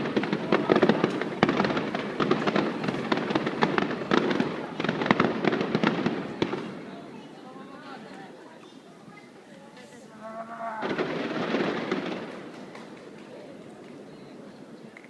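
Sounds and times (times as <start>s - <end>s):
fireworks bangs and pops: 0.0s - 7.4s, 10.8s - 15.0s.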